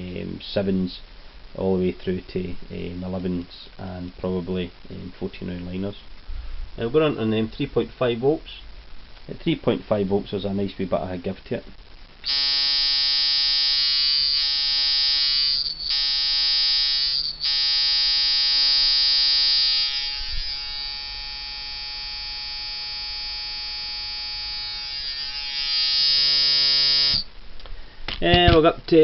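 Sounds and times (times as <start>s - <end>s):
tattoo machine buzzing: 12.2s - 27.3s.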